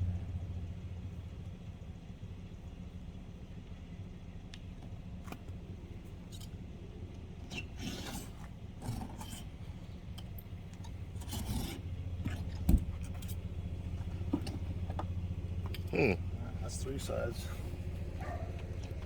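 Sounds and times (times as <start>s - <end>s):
car engine idling: 0.0s - 7.1s, 9.5s - 19.0s
tools scraping windshield glass: 7.5s - 9.7s, 10.8s - 13.5s.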